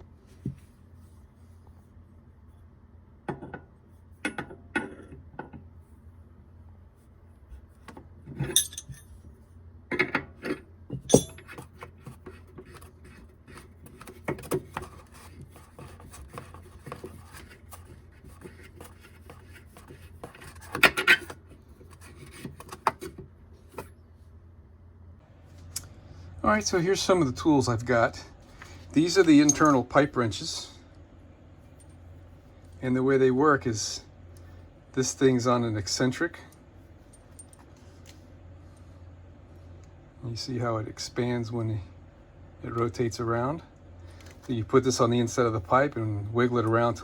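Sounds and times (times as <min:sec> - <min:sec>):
steady low hum: 0:00.0 - 0:47.0
metal tools clinking: 0:08.4 - 0:09.2, 0:11.1 - 0:11.5, 0:29.1 - 0:29.9.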